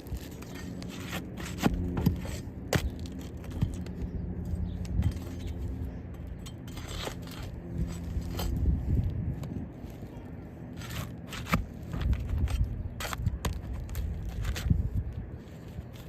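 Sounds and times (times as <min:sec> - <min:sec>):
roofing shingles scraping and clicking: 0:00.0 - 0:04.2
steady low hum: 0:00.0 - 0:16.0.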